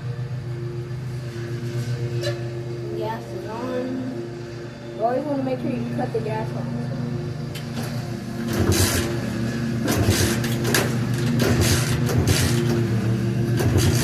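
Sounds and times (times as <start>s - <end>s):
steady low hum: 0.0s - 14.0s
dirt bike kick-starting: 8.5s - 9.2s.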